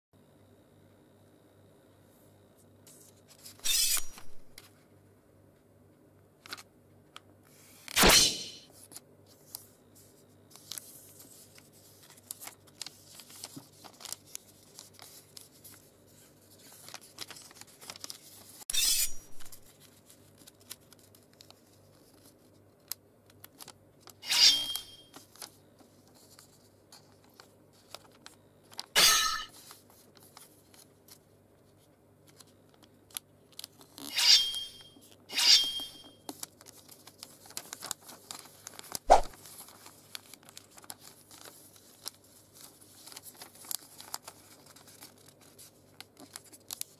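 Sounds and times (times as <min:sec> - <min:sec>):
sword slash sound effects: 0:03.6 - 0:04.2, 0:08.0 - 0:08.7, 0:18.7 - 0:19.4, 0:24.2 - 0:25.0, 0:29.0 - 0:29.5, 0:34.1 - 0:36.0
paper being folded and creased: 0:08.8 - 0:18.6, 0:19.4 - 0:24.2, 0:25.2 - 0:28.9, 0:29.6 - 0:34.1, 0:36.3 - 0:46.9.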